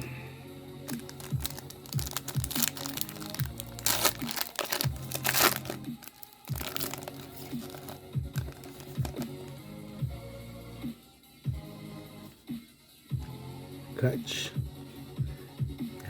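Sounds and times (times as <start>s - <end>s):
background music with steady beat: 0.0s - 16.0s
wrapper crinkling and tearing: 0.9s - 9.5s.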